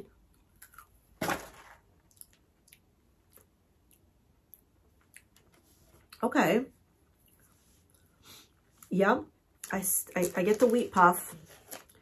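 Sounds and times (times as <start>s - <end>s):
person chewing crunchy snack: 0.5s - 1.0s.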